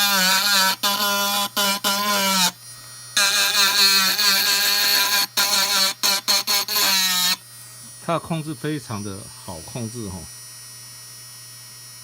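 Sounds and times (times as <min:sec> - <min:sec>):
engraving pen whining: 0:00.0 - 0:08.1.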